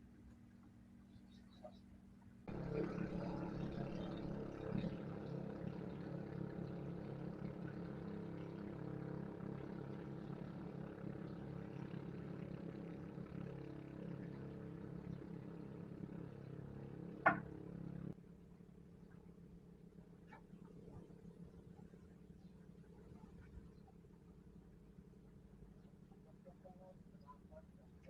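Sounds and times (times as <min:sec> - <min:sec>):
small engine humming: 0:02.5 - 0:18.2.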